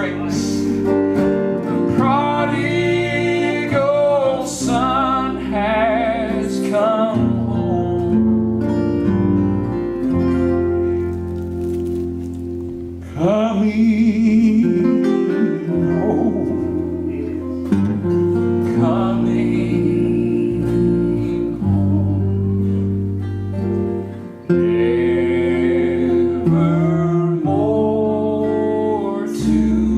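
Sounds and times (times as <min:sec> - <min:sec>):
person singing with vibrato: 0:01.7 - 0:08.5, 0:13.0 - 0:23.0, 0:24.4 - 0:29.9
sustained instrumental accompaniment: 0:15.0 - 0:28.4.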